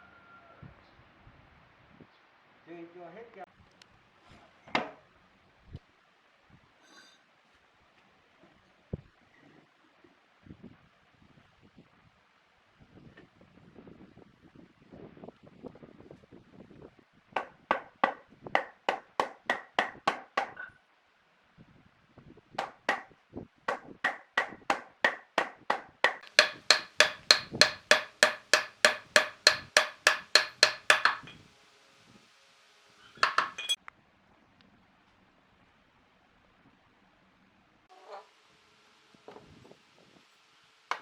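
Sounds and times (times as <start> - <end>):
ringing hammer blows: 26.2 - 31.4, 33.2 - 33.8.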